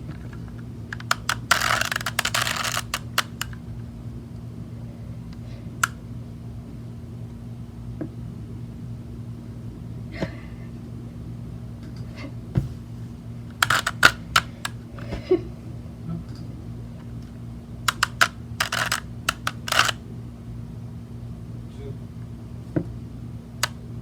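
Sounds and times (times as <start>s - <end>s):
steady low hum: 0.0s - 24.0s
puzzle cube plastic clicks: 0.9s - 3.6s, 13.6s - 14.8s, 17.8s - 20.0s.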